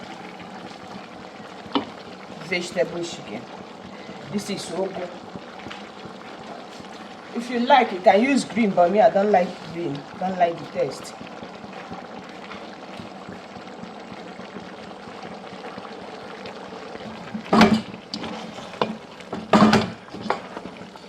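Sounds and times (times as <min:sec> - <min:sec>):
pot bubbling: 0:00.0 - 0:21.0
spoon stirring and knocking in pot: 0:17.1 - 0:20.9.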